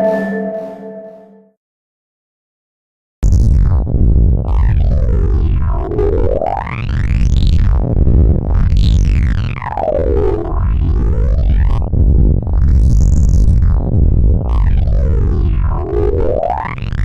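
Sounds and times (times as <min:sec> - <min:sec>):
synthetic siren-like gliding tone: 0:00.0 - 0:01.4
constant low rumble: 0:03.2 - 0:17.0.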